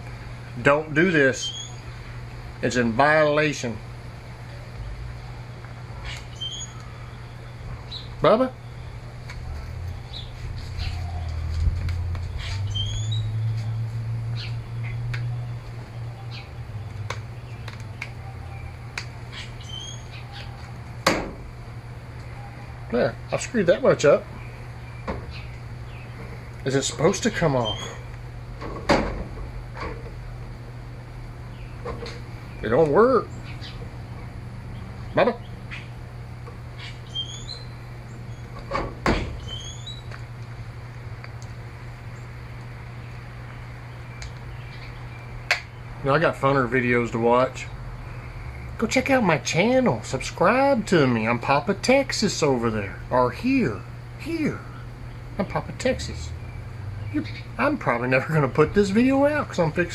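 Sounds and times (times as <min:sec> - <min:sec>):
low steady hum: 0:00.0 - 0:59.9
bird chirping: 0:01.4 - 0:02.0, 0:06.0 - 0:09.1, 0:09.8 - 0:11.6, 0:12.2 - 0:20.8, 0:24.3 - 0:28.1, 0:31.4 - 0:36.0, 0:36.7 - 0:38.6, 0:39.4 - 0:40.2, 0:42.1 - 0:46.0, 0:53.7 - 0:58.0
rising bird chirps: 0:01.4 - 0:02.0, 0:06.0 - 0:09.0, 0:12.3 - 0:20.6, 0:27.6 - 0:28.1, 0:36.7 - 0:38.5, 0:39.4 - 0:40.1.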